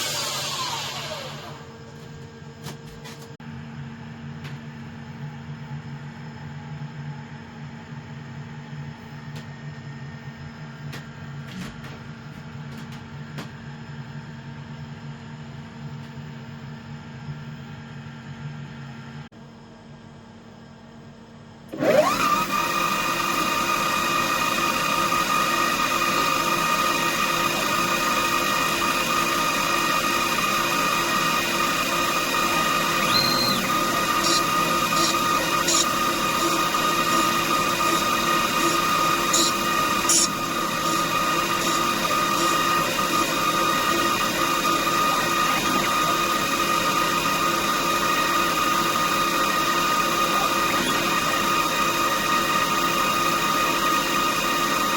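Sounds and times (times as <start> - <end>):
spindle motor whining: 0.0 - 1.8, 21.7 - 54.9.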